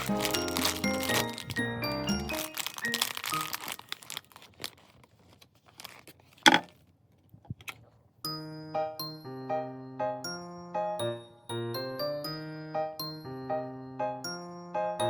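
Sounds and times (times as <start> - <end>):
background music: 0.0 - 4.2, 8.3 - 15.0
loud packaging crackle: 0.0 - 6.8
packaging crinkling: 0.0 - 6.9.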